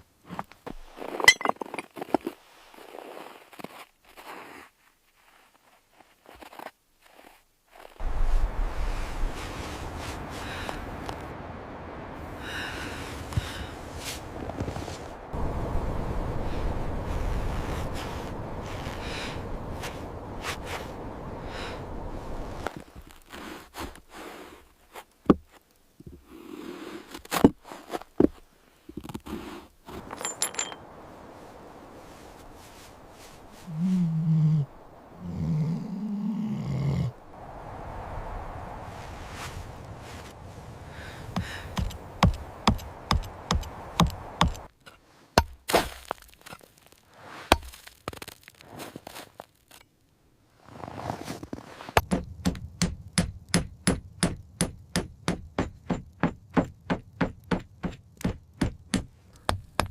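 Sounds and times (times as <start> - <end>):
sharp chopping strikes: 41.8 - 44.6
sharp knocks and scrapes: 51.2 - 59.9.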